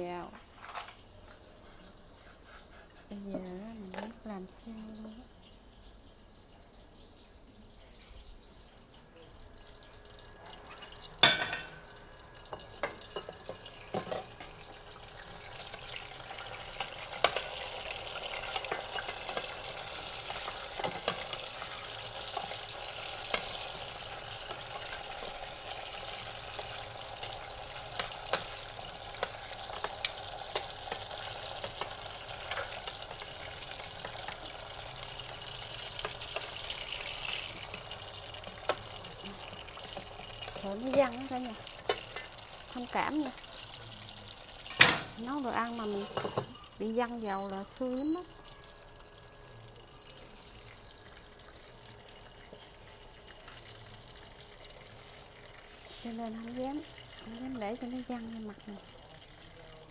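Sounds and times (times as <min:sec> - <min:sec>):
food sizzling in hot oil: 0:01.4 - 0:59.9
pan clanking: 0:10.6 - 0:14.6.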